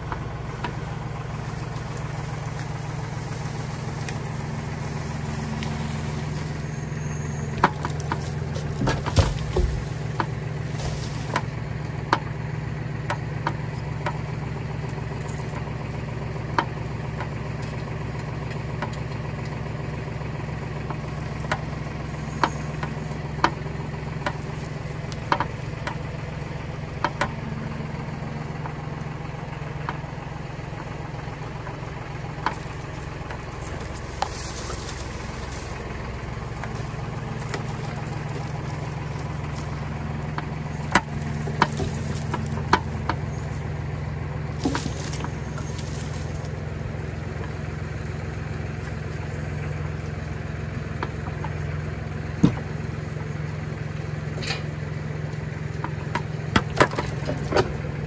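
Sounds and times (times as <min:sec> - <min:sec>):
engine idling: 0:00.0 - 0:58.0.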